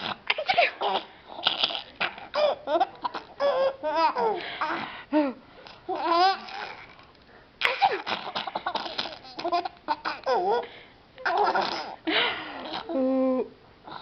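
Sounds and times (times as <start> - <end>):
baby laughing: 0.0 - 4.9, 5.9 - 6.9, 7.6 - 13.0.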